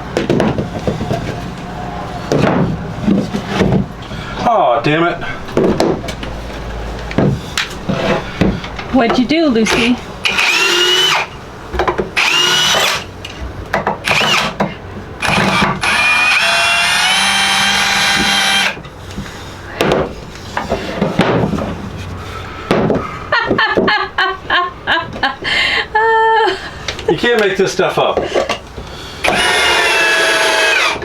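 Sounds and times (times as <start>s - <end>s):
power drill motor whine: 10.2s - 11.3s, 12.2s - 13.1s, 14.0s - 14.6s, 15.2s - 18.8s, 29.2s - 31.0s.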